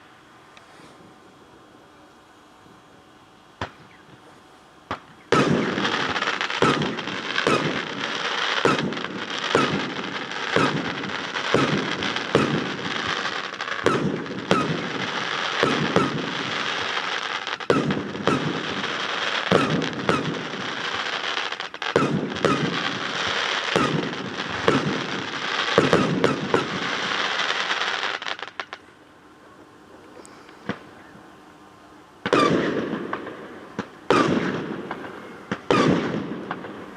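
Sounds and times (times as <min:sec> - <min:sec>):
fireworks crackling: 0:03.6 - 0:28.9, 0:32.2 - 0:36.9
fireworks bangs: 0:04.9 - 0:28.8, 0:32.2 - 0:36.9.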